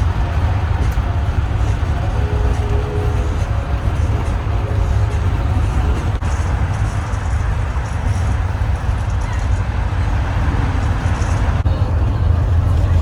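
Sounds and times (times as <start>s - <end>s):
noisy hiss: 0.0s - 13.0s
vehicle low rumble: 0.0s - 13.0s.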